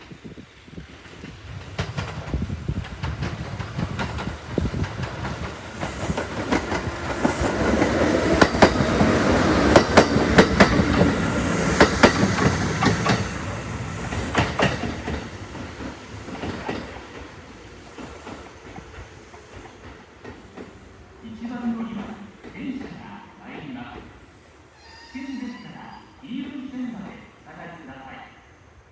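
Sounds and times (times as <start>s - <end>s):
electric train passing: 0.0s - 25.1s
wheels clicking over rail joints: 1.2s - 20.8s.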